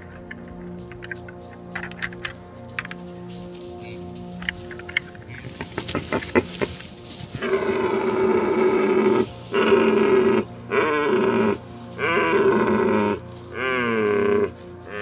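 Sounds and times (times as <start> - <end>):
deer stag roaring: 7.4 - 15.0.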